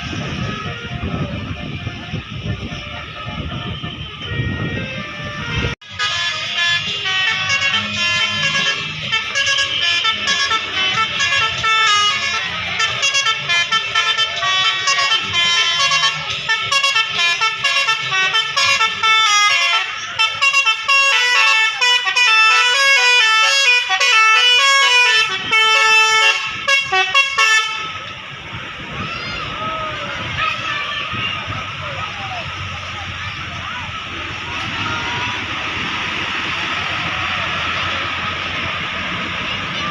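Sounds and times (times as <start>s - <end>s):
musical bus horn: 0.0s - 28.5s
low engine hum: 0.0s - 39.9s.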